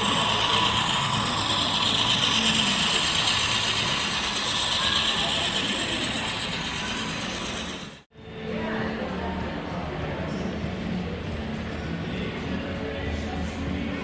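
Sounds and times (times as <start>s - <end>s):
model trains whirring and clattering: 0.0s - 8.1s.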